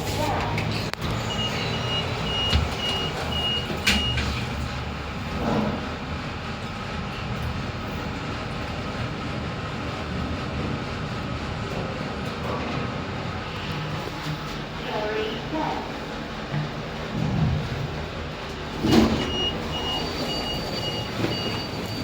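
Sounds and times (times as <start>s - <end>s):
elevator running hum: 0.0s - 22.0s
elevator beeper beeps: 1.2s - 4.4s, 18.8s - 22.0s.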